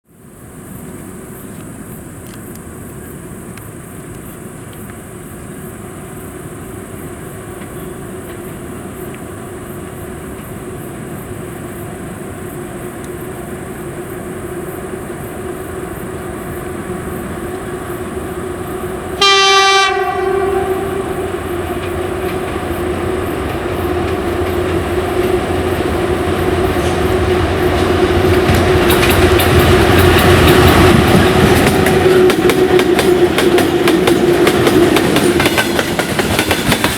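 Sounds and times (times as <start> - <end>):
electric locomotive running hum: 0.2 - 36.9
train horn blast: 19.1 - 23.4
wheels clattering over rail joints: 21.0 - 36.9.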